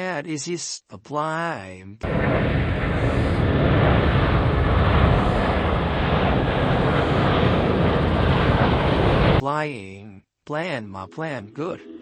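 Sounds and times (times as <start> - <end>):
airplane engines running: 2.0 - 9.4.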